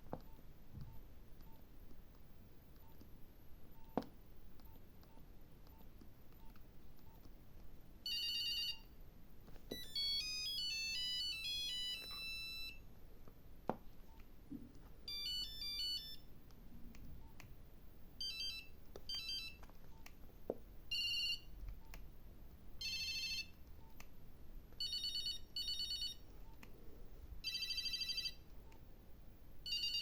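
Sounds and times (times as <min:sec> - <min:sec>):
mobile phone beeping ringtones: 0:08.0 - 0:08.9, 0:09.7 - 0:12.8, 0:15.1 - 0:16.3, 0:18.2 - 0:20.0, 0:20.9 - 0:21.5, 0:22.8 - 0:23.5, 0:24.8 - 0:26.2, 0:27.4 - 0:28.4, 0:29.6 - 0:30.0.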